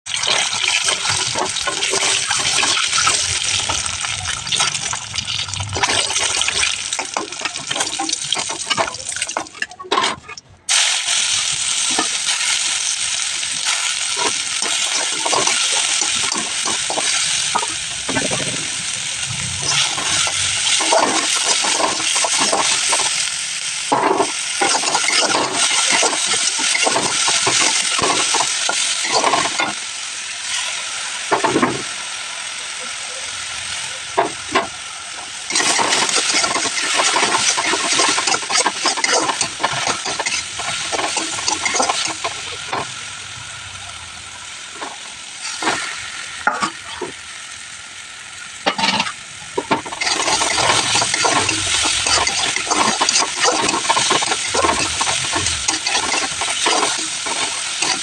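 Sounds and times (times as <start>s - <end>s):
spatula clicking and scraping: 0.1s - 4.9s, 5.6s - 10.5s, 13.6s - 18.5s, 19.6s - 23.2s, 23.9s - 29.8s, 35.5s - 42.9s, 48.7s - 58.0s
food sizzling in oil: 0.1s - 58.0s.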